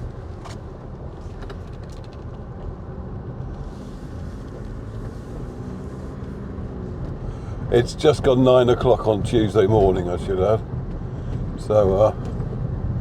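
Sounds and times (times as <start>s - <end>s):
car engine and road noise: 0.0s - 13.0s
tyres hissing on wet road: 3.6s - 6.4s.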